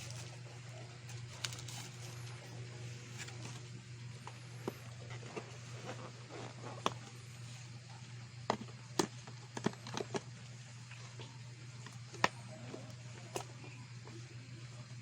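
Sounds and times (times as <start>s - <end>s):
plastic parts clicking and tapping: 8.5s - 10.3s.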